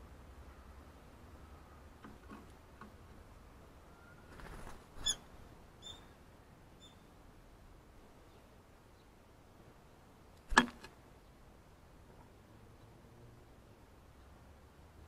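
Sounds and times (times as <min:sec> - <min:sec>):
rustle: 0:00.0 - 0:15.0.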